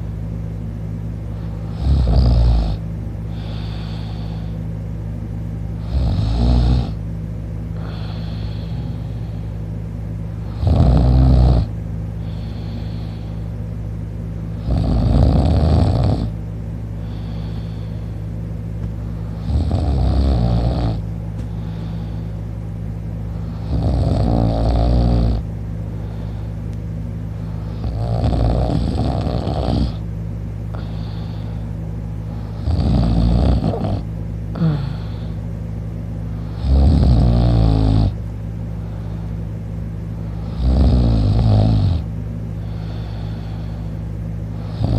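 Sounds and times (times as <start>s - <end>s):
steady low hum: 0.0s - 44.9s
man snoring: 1.3s - 4.6s, 5.8s - 7.0s, 7.8s - 9.5s, 10.4s - 13.5s, 14.5s - 16.4s, 17.0s - 18.1s, 19.2s - 22.3s, 23.3s - 26.5s, 27.6s - 30.0s, 30.7s - 31.6s, 32.4s - 35.4s, 36.4s - 38.2s, 40.2s - 43.9s, 44.5s - 44.9s.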